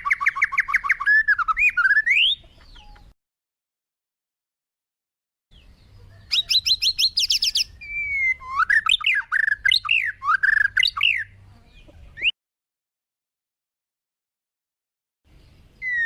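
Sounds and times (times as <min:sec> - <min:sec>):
bird song whistled notes: 0:00.0 - 0:03.2, 0:05.5 - 0:11.4, 0:15.3 - 0:16.0.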